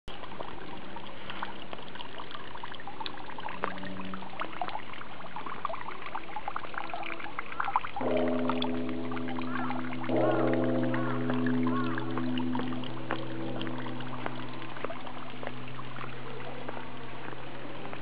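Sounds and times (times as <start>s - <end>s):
water drips and splashes: 0.1s - 18.0s
water trickling and pouring: 0.1s - 18.0s
chord of steady low tones: 8.0s - 18.0s.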